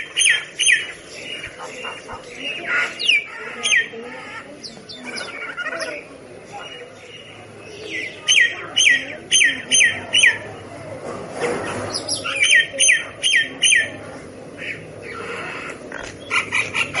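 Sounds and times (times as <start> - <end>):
myna whistled calls: 4.6 - 10.5, 11.8 - 14.0.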